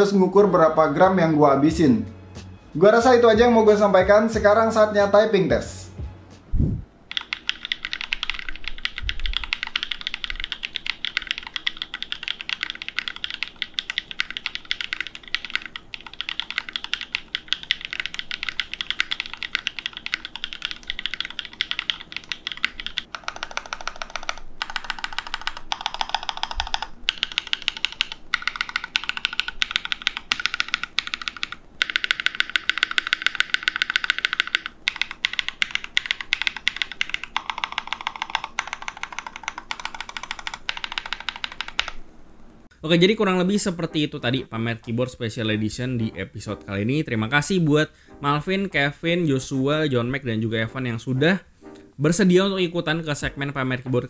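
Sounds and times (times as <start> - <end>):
mechanical keyboard typing: 7.1 - 42.0.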